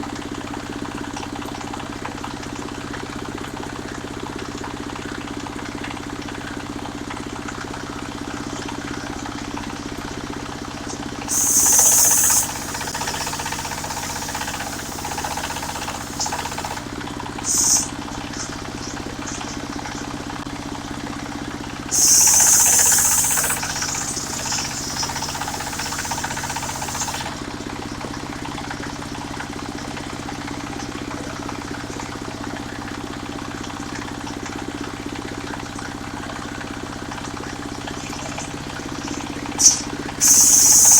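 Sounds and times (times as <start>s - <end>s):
saw blade cutting log: 11.3s - 16.8s, 21.9s - 27.4s
sawmill engine running: 11.3s - 18.1s, 21.9s - 27.6s, 40.2s - 40.9s.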